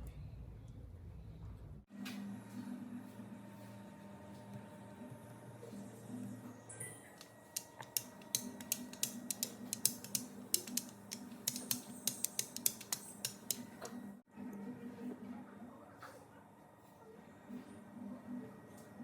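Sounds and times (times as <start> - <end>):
rapid irregular clicking: 7.2 - 13.7.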